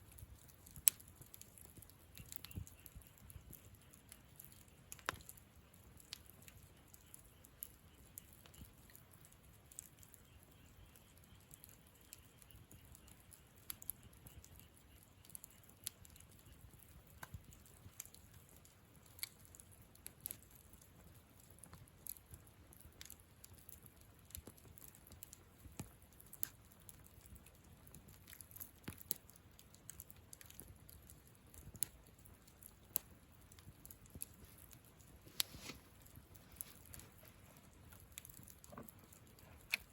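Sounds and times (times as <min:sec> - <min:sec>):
campfire crackling: 0:00.0 - 0:39.9.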